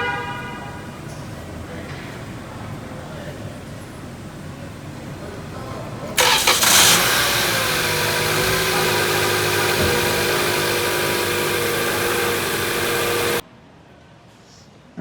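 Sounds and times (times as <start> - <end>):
car engine starting and idling: 2.3 - 13.4.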